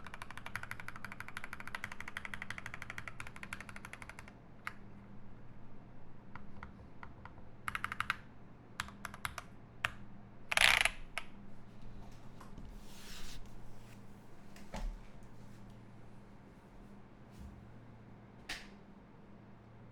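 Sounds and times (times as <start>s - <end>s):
mechanical keyboard typing: 0.0s - 4.8s, 6.6s - 8.2s, 8.8s - 9.5s.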